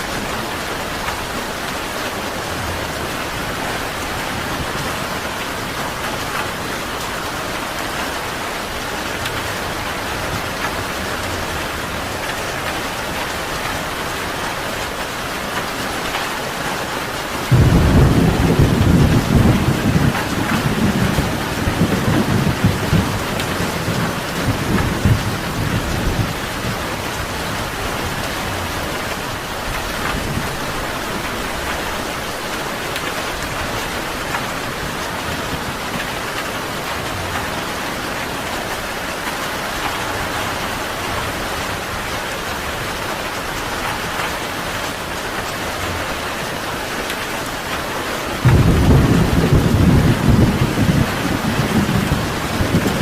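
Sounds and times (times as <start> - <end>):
steady rain: 0.0 - 53.0
thunder rumbling: 17.5 - 32.1, 48.4 - 53.0.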